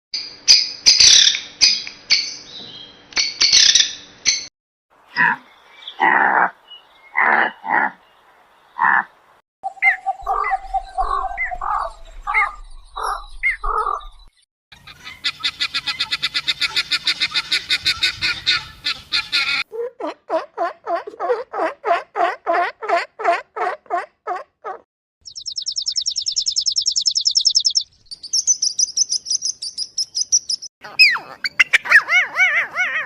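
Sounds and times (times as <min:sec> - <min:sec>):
animal calls with pitch flicks: 0:30.8 - 0:33.0.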